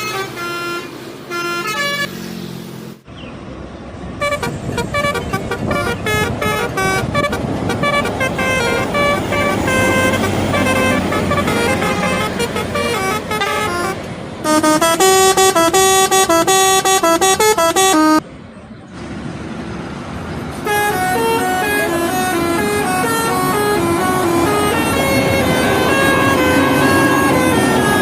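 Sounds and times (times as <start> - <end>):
multi-tone bus air horn melody: 0.0 - 2.1, 4.2 - 18.2, 20.6 - 28.0
traffic and engine noise: 0.0 - 28.0.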